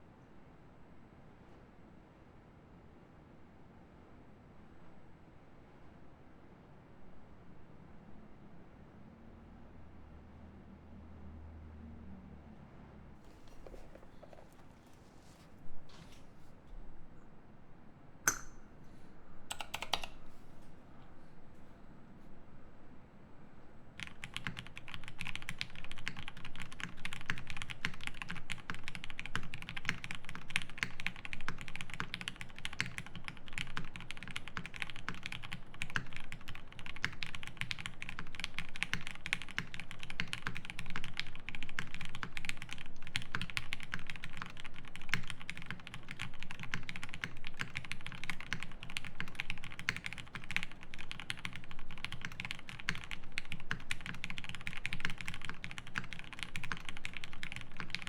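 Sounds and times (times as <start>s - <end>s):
fast typing on mechanical keyboard: 19.5s - 20.2s, 24.0s - 58.0s.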